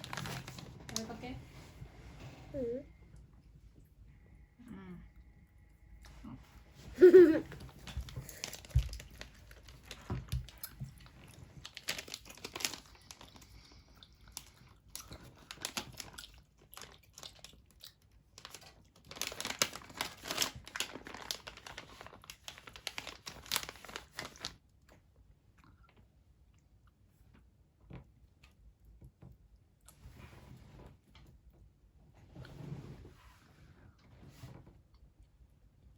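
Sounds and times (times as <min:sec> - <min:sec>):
plastic packaging crinkling: 0:00.0 - 0:01.3, 0:07.0 - 0:13.5, 0:15.0 - 0:17.5, 0:18.4 - 0:24.6.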